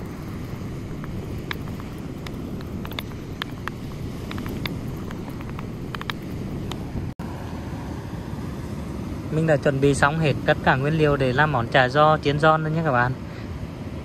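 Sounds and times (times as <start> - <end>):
wind rumble on microphone: 0.0 - 7.2.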